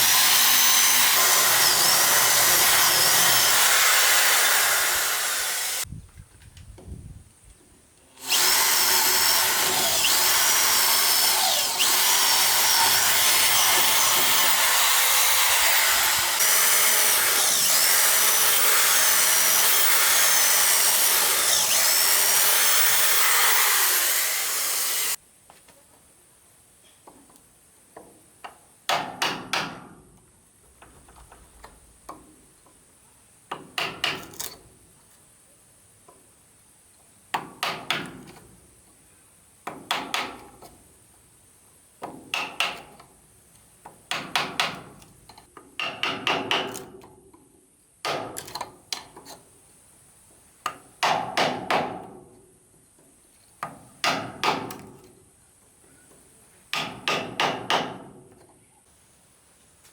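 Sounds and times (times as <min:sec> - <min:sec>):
hammer striking wood: 0:56.7 - 0:58.1.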